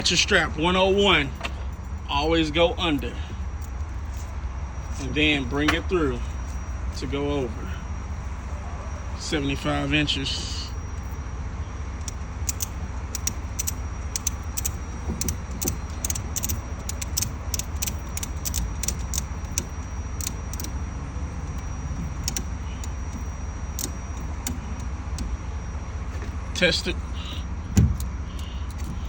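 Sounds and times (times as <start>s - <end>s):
ratchet strap clicking: 12.0s - 20.8s, 21.4s - 25.3s.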